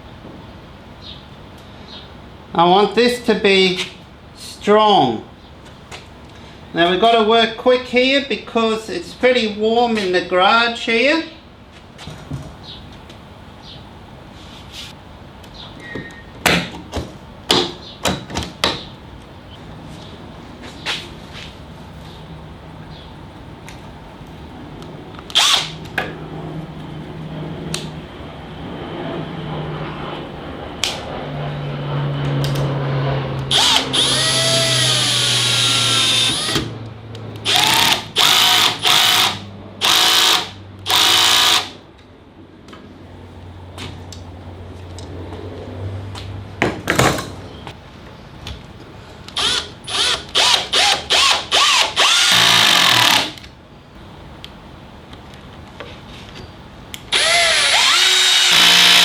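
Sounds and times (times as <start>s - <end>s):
cordless drill driving screws: 25.3s - 25.7s, 33.5s - 36.7s, 37.4s - 41.8s, 49.4s - 53.4s, 57.1s - 59.0s.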